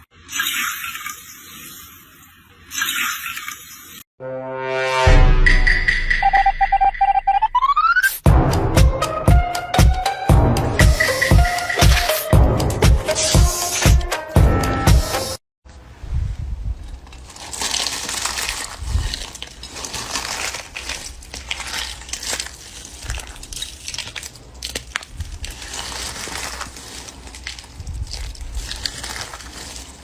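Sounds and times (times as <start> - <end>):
slime crackling and popping: 17.0 - 30.0.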